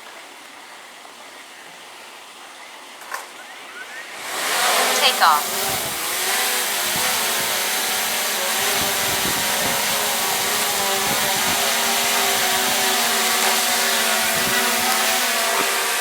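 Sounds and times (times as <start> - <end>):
drone propellers whining: 4.0 - 16.0.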